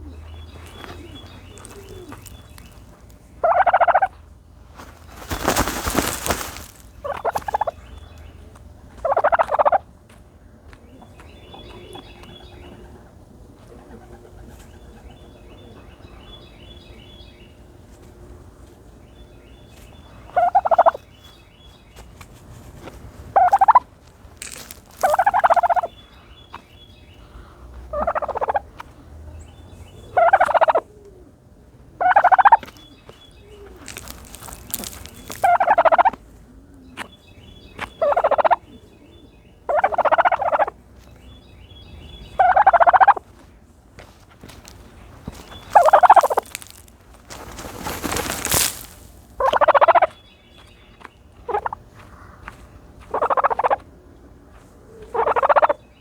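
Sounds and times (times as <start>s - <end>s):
turkey calling: 0.0s - 4.2s, 5.1s - 8.0s, 9.0s - 9.8s, 20.1s - 21.1s, 23.4s - 26.6s, 27.2s - 28.7s, 30.0s - 31.1s, 32.0s - 36.2s, 37.7s - 38.9s, 39.6s - 40.8s, 42.2s - 43.2s, 44.6s - 50.2s, 51.4s - 53.8s, 55.0s - 55.8s
turkey dust-bathing: 0.6s - 7.9s, 22.4s - 26.4s, 33.5s - 36.1s, 44.4s - 50.1s.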